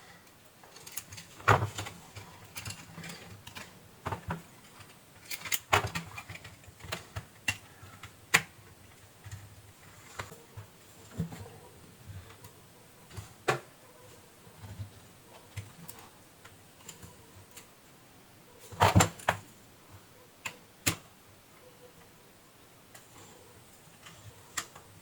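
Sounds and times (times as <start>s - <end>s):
small parts and tools clicking: 0.2s - 10.4s.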